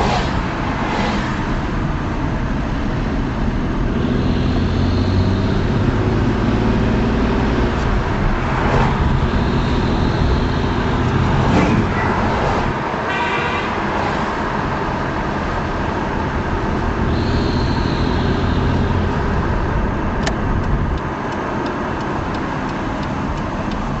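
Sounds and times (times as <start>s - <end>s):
car engine running: 0.0s - 12.9s.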